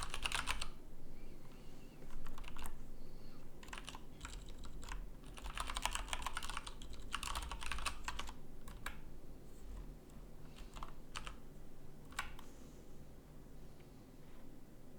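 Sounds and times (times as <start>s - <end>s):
keyboard typing clicks: 0.0s - 0.8s, 2.1s - 2.8s, 3.6s - 9.0s, 10.6s - 11.4s.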